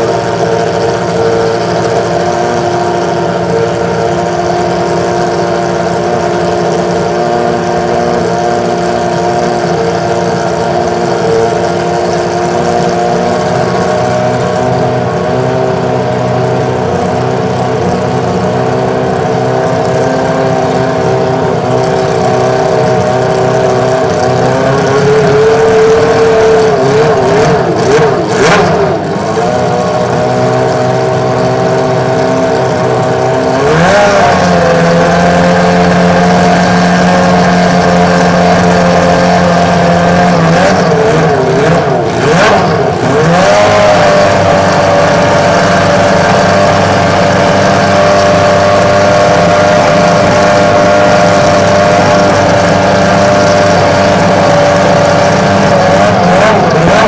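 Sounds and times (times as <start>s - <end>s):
racing car engine revving: 0.0s - 57.0s.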